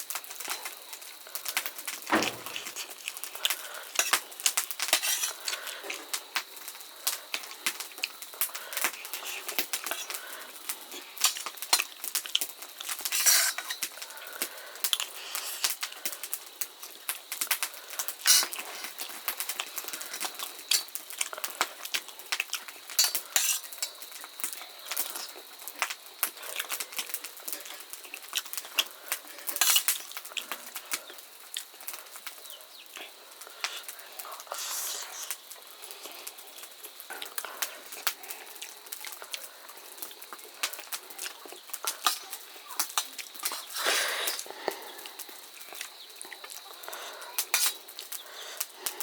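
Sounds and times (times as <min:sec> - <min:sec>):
cutlery clinking on dishes: 0:04.9 - 0:05.4, 0:23.0 - 0:23.7, 0:47.5 - 0:47.8.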